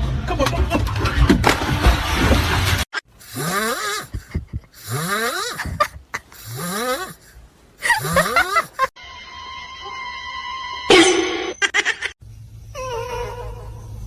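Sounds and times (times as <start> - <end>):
animal breathy rising calls: 3.2 - 8.9.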